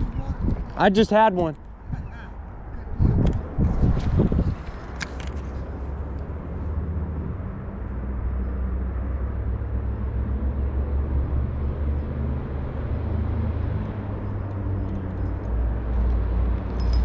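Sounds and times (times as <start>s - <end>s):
wind buffeting microphone: 0.0s - 6.0s.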